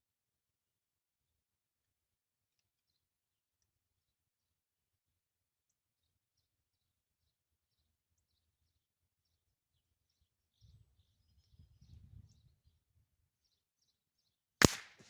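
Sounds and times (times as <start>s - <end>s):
faint birdsong: 2.5s - 14.5s
rifle shot: 14.6s - 15.0s.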